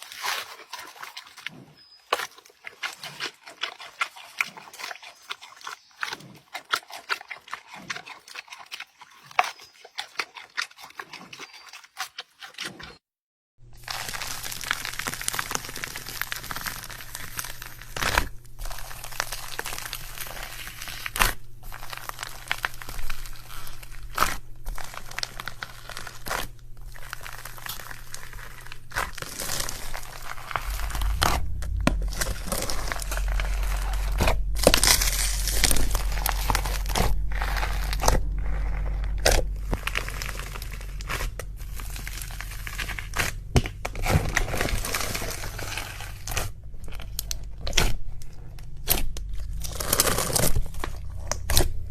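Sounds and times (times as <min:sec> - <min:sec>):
slime squishing and crackling: 0:00.0 - 0:13.0, 0:13.8 - 0:51.9
low hum: 0:13.6 - 0:51.9.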